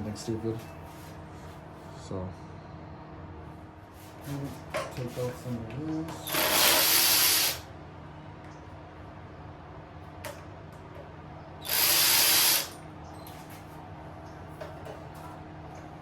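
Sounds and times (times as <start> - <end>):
steady low hum: 0.0 - 16.0
pressurised air hiss: 6.3 - 7.6, 11.6 - 12.8.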